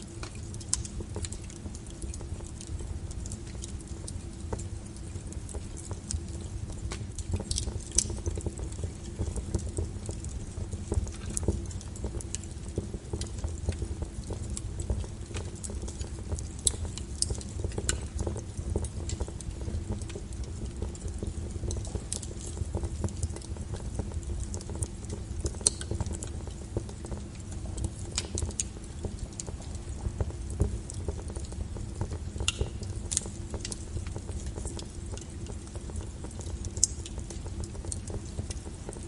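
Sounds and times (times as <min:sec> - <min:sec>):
burning wood crackling and popping: 0:00.0 - 0:39.0
fire low rumble: 0:00.0 - 0:39.0.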